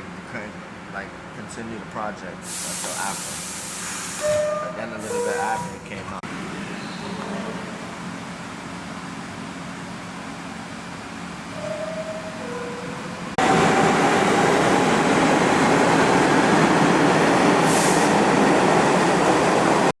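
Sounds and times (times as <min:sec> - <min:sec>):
subway train running: 0:00.0 - 0:20.0
high hiss: 0:02.4 - 0:05.7
subway door chime: 0:04.2 - 0:07.9, 0:11.0 - 0:16.1.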